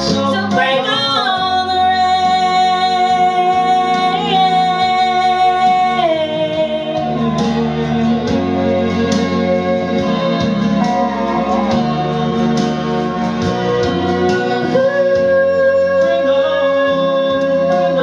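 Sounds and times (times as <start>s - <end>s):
woman singing a country ballad: 0.0s - 7.4s.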